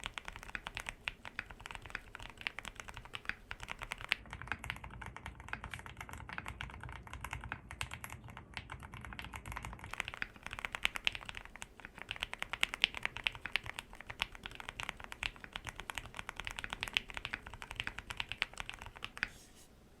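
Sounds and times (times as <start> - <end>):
mechanical keyboard typing: 0.0 - 19.4.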